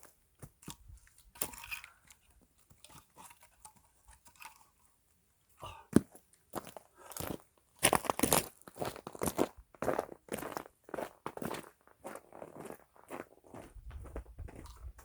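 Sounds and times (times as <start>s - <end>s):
firewood crunching and scraping: 0.4s - 4.8s.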